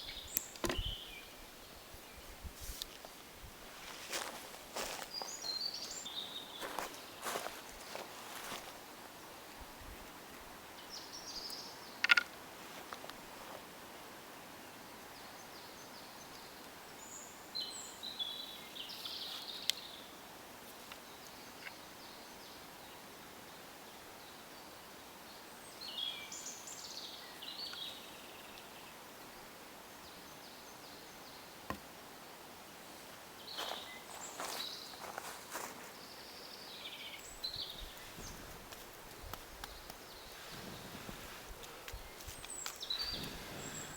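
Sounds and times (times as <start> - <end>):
small birds chirping: 0.0 - 8.8, 10.6 - 12.3, 15.1 - 20.2, 25.3 - 43.9
faint steady hiss: 0.0 - 43.9.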